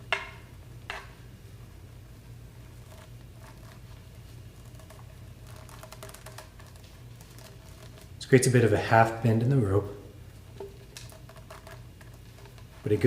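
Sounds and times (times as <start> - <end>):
steady low hum: 0.0 - 13.0
rope rustling: 2.7 - 8.2.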